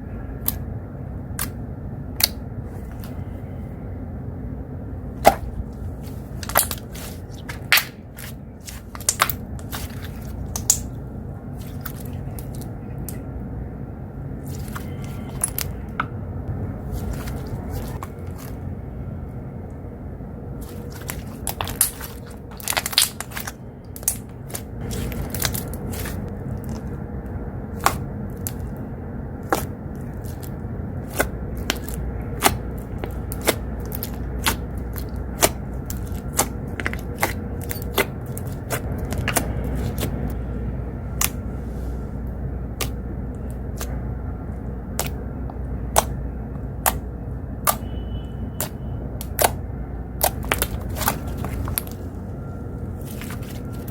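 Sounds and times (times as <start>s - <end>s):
low rumble of outside noise: 0.0s - 53.9s
slime clicking and popping: 6.4s - 11.0s, 20.7s - 26.2s, 27.7s - 28.6s, 29.4s - 40.3s, 42.8s - 44.0s, 44.9s - 47.8s, 48.6s - 49.6s, 50.2s - 52.0s.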